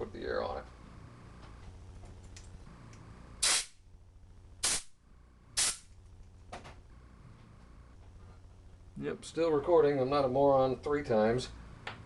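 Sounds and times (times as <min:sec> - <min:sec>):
compressed air blasts: 0:03.4 - 0:03.8, 0:04.6 - 0:05.0, 0:05.6 - 0:05.9.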